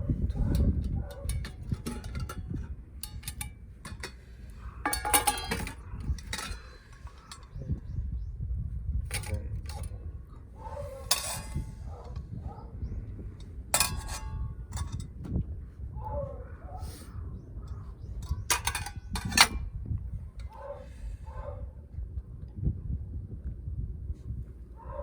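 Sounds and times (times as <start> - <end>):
wind rumble on microphone: 0.0 - 25.0
metal cookware clinking: 0.3 - 7.6, 9.1 - 9.9, 10.8 - 12.0, 13.7 - 15.1, 18.2 - 19.7.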